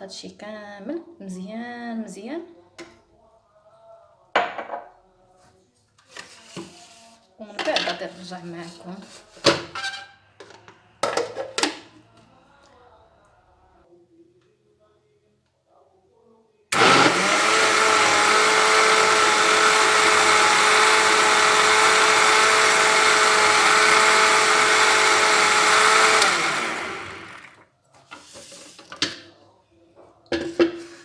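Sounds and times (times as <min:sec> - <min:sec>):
electric blender motor: 0:16.7 - 0:27.6.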